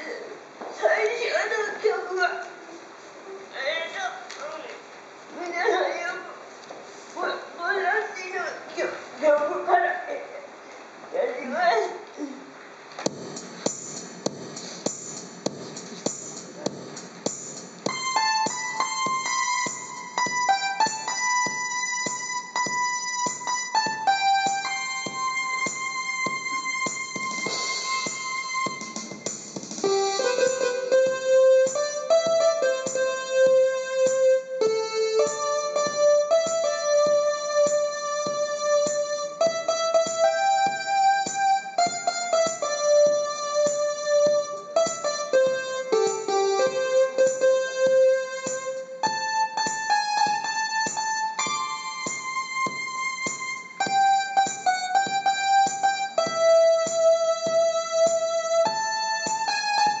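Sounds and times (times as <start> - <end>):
electronic keyboard tune: 13.1 - 60.0.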